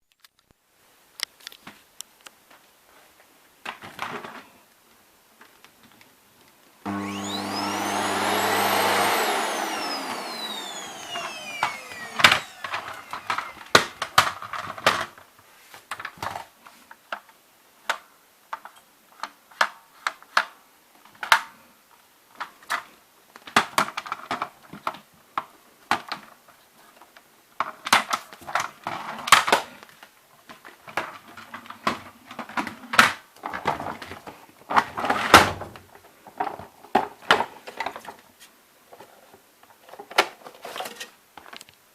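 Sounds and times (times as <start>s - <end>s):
vacuum cleaner motor winding down: 6.9s - 13.9s.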